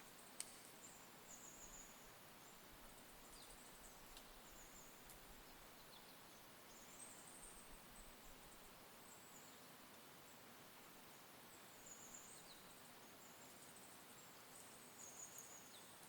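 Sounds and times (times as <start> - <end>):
faint high songbird chirps: 0.1 - 16.0
faint ticks: 0.4 - 0.7, 3.3 - 4.4, 5.0 - 5.2.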